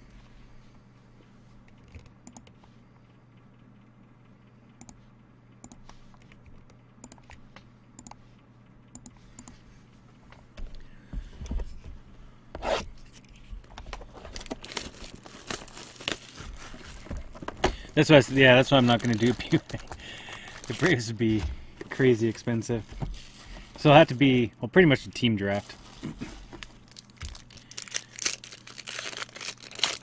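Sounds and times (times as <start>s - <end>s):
faint steady hum: 0.0s - 30.0s
packaging rustling and tearing: 14.0s - 24.2s, 25.5s - 30.0s.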